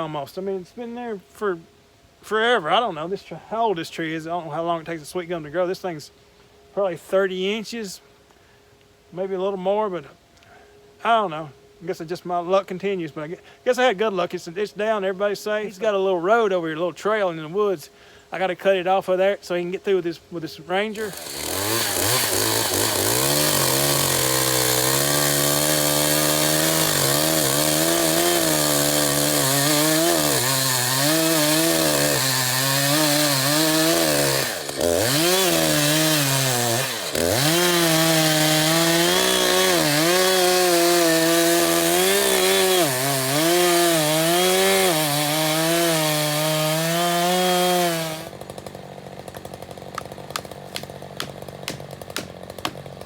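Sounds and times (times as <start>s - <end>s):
chainsaw cutting wood: 20.9s - 53.0s.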